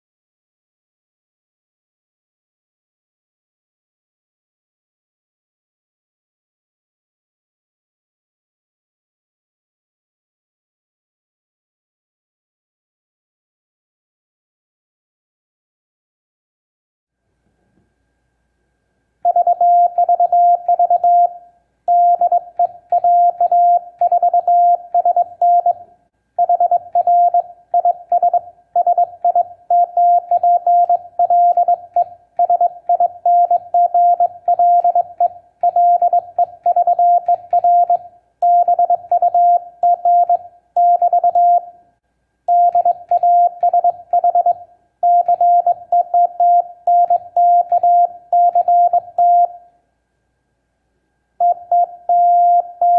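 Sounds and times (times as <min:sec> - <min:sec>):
morse code sidetone beeps: 0:19.3 - 0:41.8, 0:42.5 - 0:49.7, 0:51.4 - 0:52.9.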